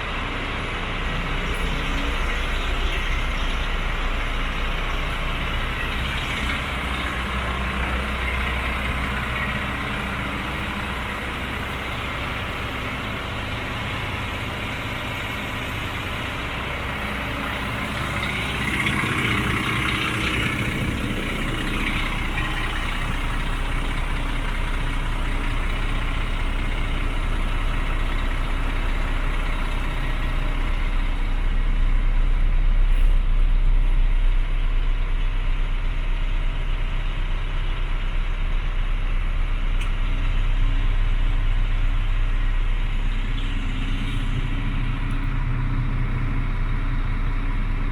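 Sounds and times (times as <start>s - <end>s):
diesel truck engine idling: 0.0s - 47.9s.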